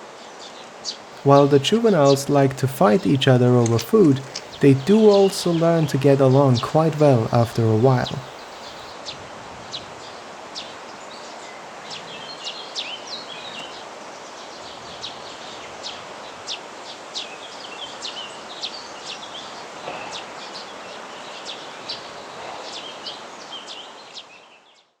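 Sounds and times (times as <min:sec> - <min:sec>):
steady background hiss: 0:01.2 - 0:08.9
birds calling and twittering: 0:01.3 - 0:08.9.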